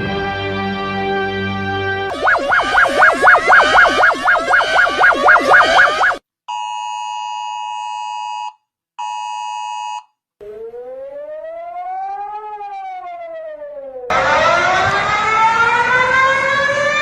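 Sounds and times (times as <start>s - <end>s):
siren wail: 2.1s - 6.2s, 10.4s - 17.0s
steady attention tone: 2.1s - 6.2s.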